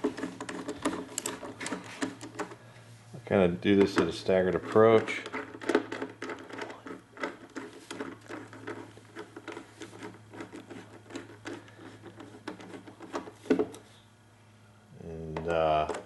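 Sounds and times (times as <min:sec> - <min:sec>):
screwdriver clicks and scrapes: 0:00.0 - 0:02.6.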